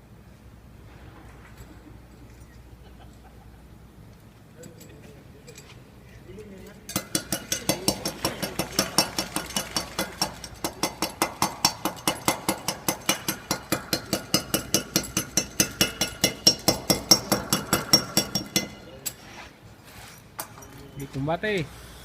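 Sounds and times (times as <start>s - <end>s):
hammer striking steel: 6.9s - 19.2s.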